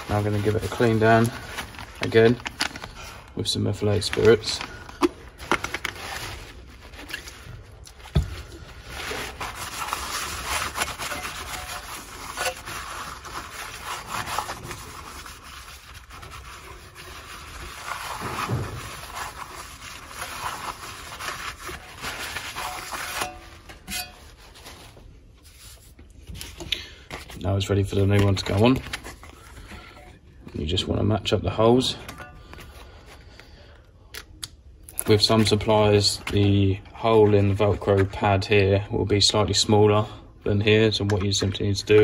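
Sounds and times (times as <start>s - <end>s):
cloth rubbing on metal plate: 8.8s - 26.0s.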